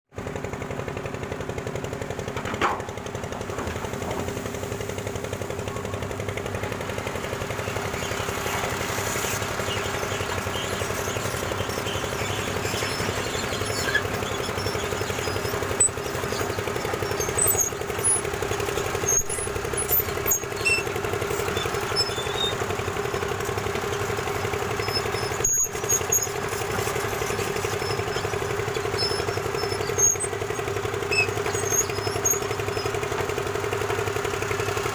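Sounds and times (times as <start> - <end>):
excavator diesel engine running: 0.2 - 34.9.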